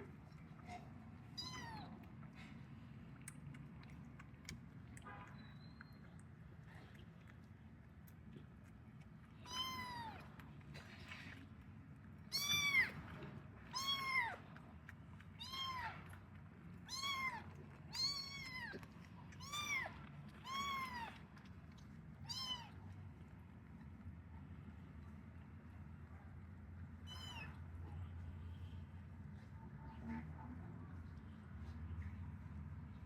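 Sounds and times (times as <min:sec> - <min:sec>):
kitten meowing: 0:01.4 - 0:01.9, 0:09.4 - 0:10.2, 0:12.3 - 0:13.0, 0:13.7 - 0:14.4, 0:15.4 - 0:16.0, 0:16.9 - 0:18.8, 0:19.4 - 0:21.1, 0:22.3 - 0:22.7, 0:27.1 - 0:27.6.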